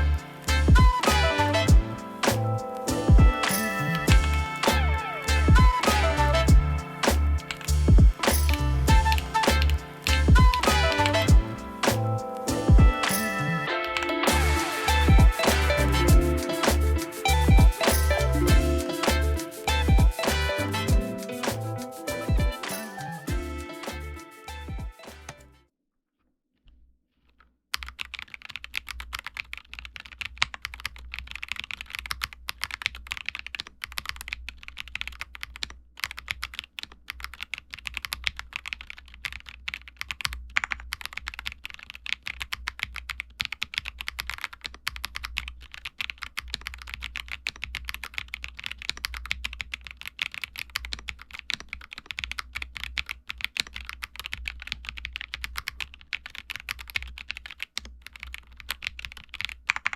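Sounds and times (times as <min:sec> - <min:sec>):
mechanical keyboard typing: 0:27.8 - 0:59.9.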